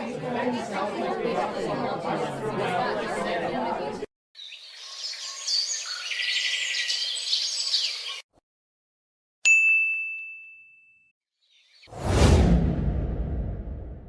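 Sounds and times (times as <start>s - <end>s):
birds chirping: 4.4s - 8.3s
bell-like ding: 9.5s - 11.1s.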